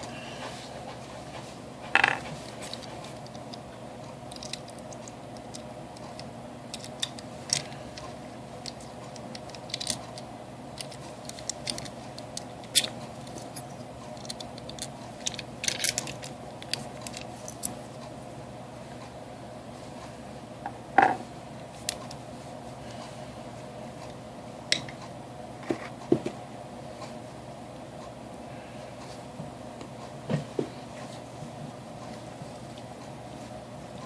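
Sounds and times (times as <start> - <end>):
steady low hum: 0.0 - 34.0
padlock parts clicking and tapping: 8.7 - 10.2.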